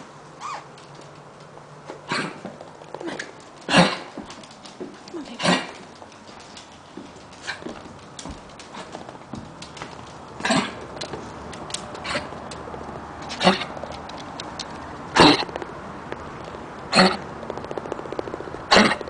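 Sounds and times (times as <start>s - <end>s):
dog coughing: 2.1s - 2.4s, 3.7s - 4.2s, 5.4s - 5.8s, 10.4s - 10.9s, 15.1s - 15.5s, 18.7s - 19.0s.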